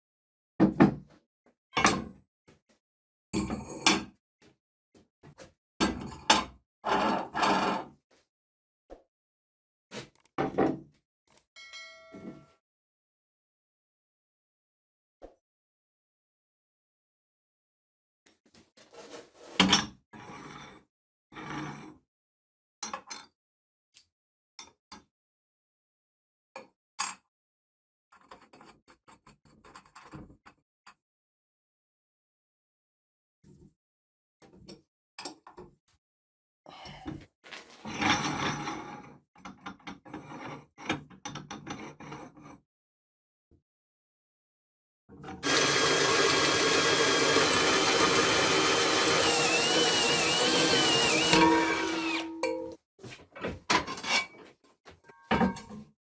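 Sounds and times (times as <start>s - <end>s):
tools knocking and clinking: 45.4s - 52.8s, 55.1s - 55.8s.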